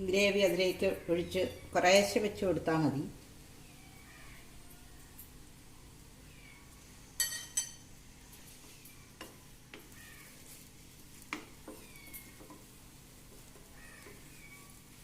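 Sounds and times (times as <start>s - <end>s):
batter sizzling: 0.0s - 15.0s
metal utensil clinking on frying pan: 7.2s - 7.8s.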